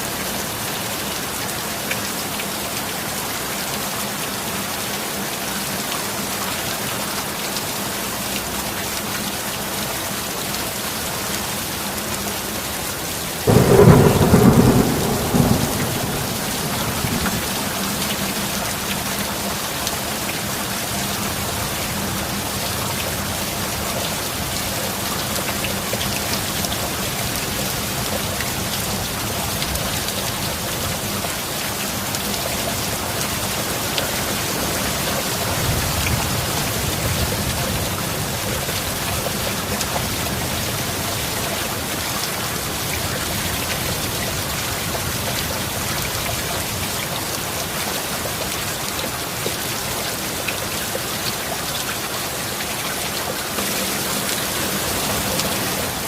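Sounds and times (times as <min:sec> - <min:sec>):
heavy rain: 0:00.0 - 0:56.0
thunder clap: 0:13.5 - 0:18.9.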